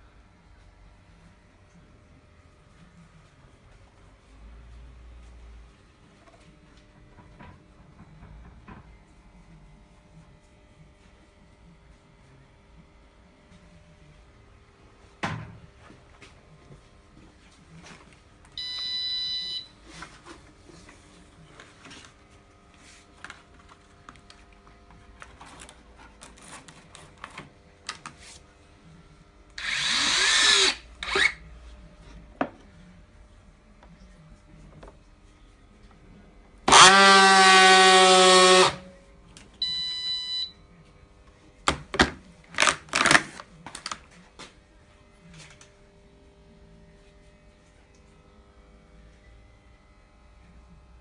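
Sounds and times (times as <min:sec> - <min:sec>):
strapping tool buzzing: 0:29.6 - 0:31.4, 0:36.7 - 0:38.9
strapping tool motor whirring: 0:29.6 - 0:31.4, 0:36.7 - 0:38.8.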